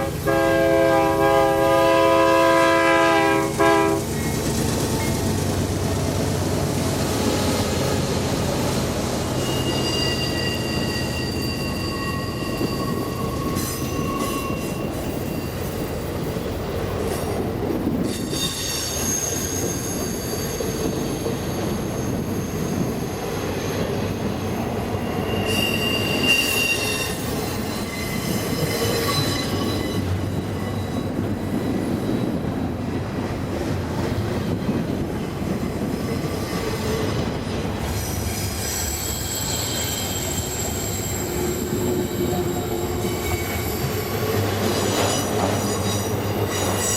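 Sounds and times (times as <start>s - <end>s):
train wheels rumbling and clattering: 0.0s - 46.9s
high-pitched wheel squeals: 8.7s - 16.1s, 18.0s - 32.4s, 36.0s - 46.9s.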